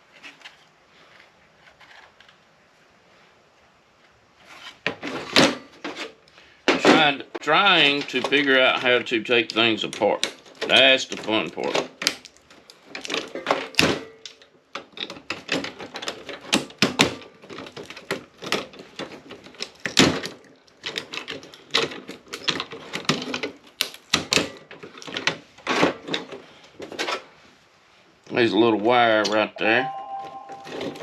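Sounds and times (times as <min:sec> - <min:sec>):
hand tools clicking and knocking: 0:07.8 - 0:27.2.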